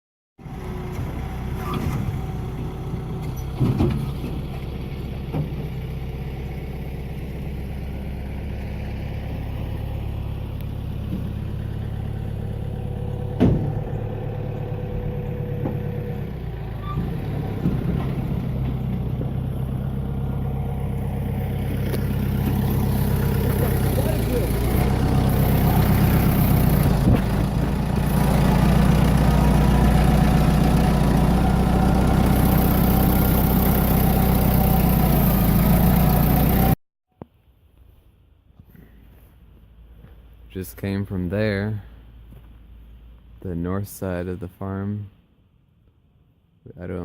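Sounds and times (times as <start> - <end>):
vehicle engine running: 0.4 - 36.8
sharp knocks: 13.4 - 13.9.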